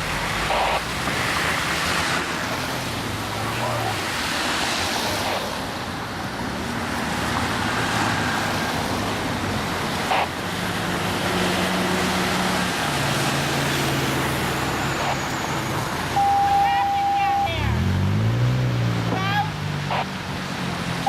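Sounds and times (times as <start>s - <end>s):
road noise: 0.0s - 21.0s
vehicle engines running: 0.0s - 21.0s.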